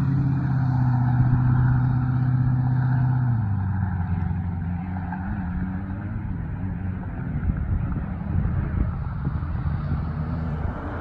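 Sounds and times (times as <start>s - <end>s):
car passing by: 0.0s - 11.0s
wind noise: 5.3s - 11.0s.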